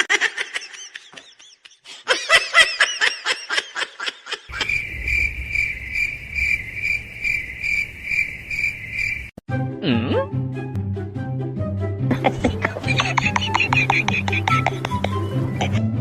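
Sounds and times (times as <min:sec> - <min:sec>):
low rumble: 0:04.5 - 0:09.3
cricket chirping: 0:04.5 - 0:09.4.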